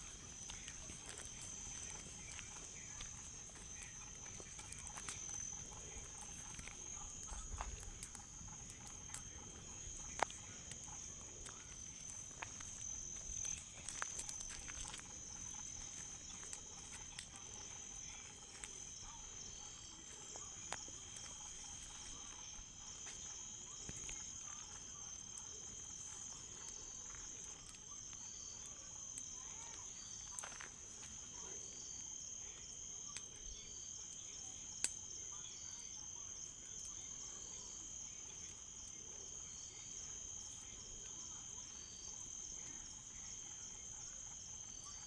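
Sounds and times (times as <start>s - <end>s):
bonfire crackling and popping: 0.0s - 31.4s
crickets trilling: 0.0s - 45.0s.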